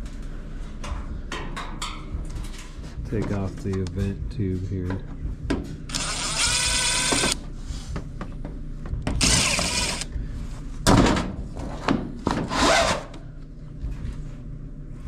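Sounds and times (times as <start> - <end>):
cordless drill spinning: 5.9 - 7.4, 9.2 - 10.1.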